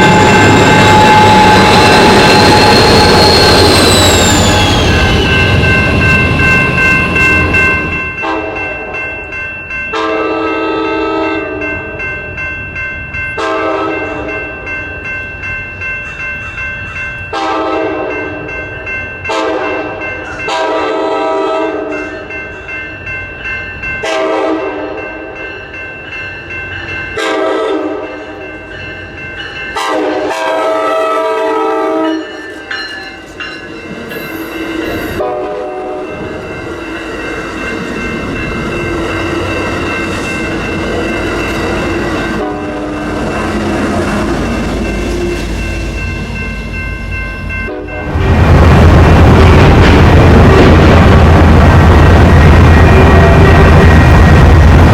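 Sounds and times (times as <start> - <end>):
locomotive horn blasts: 0.0 - 2.9, 8.2 - 9.0, 9.9 - 11.6, 13.4 - 14.3, 17.3 - 18.2, 19.3 - 22.0, 24.0 - 25.0, 27.2 - 28.0, 29.8 - 32.4, 35.2 - 36.2, 42.3 - 44.3, 47.7 - 48.2, 52.5 - 53.9
high ringing: 0.0 - 20.6, 32.0 - 48.4
train passing: 0.0 - 54.9.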